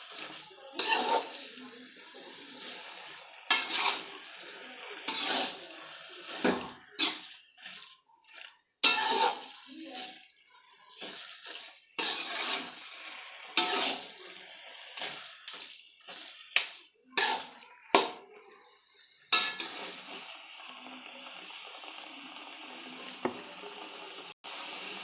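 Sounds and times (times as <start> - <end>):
spoon clinking and scraping pot: 0.2 - 1.8, 2.5 - 4.3, 5.1 - 18.4, 19.1 - 20.1.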